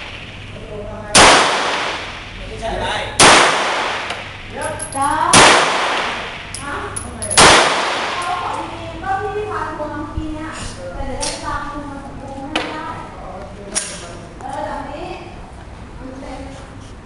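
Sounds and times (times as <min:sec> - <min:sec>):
pistol shots with echo: 0:01.1 - 0:02.4, 0:03.2 - 0:04.4, 0:05.3 - 0:06.6, 0:07.3 - 0:08.3.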